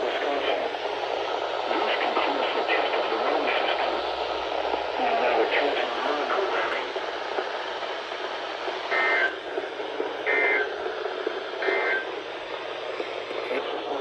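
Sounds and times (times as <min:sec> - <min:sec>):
radio hiss: 0:00.0 - 0:14.0
alert radio beeps: 0:08.9 - 0:09.4, 0:10.3 - 0:10.7, 0:11.6 - 0:12.1.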